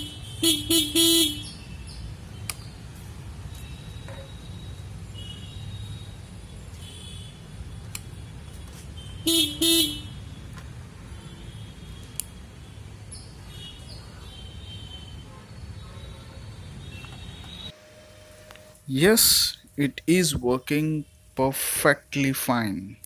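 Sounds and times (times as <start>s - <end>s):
motorcycle horn honks: 0.0s - 1.6s, 9.0s - 10.2s
sharp clicks: 2.4s - 2.7s, 12.0s - 12.4s.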